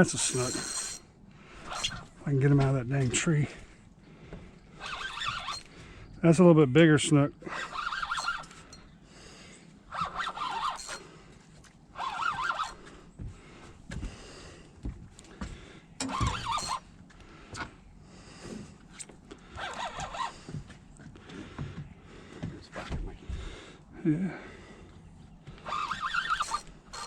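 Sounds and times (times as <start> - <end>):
fishing reel drag buzzing: 0.0 - 2.2, 4.8 - 5.8, 7.4 - 9.0, 9.9 - 11.1, 11.9 - 12.9, 16.0 - 16.9, 19.6 - 20.4, 25.6 - 27.0.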